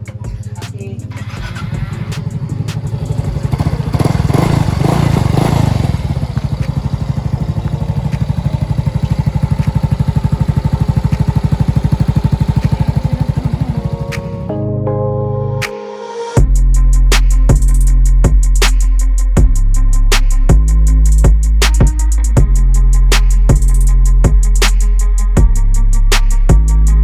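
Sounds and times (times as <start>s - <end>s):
scooter engine idling: 0.0s - 14.5s.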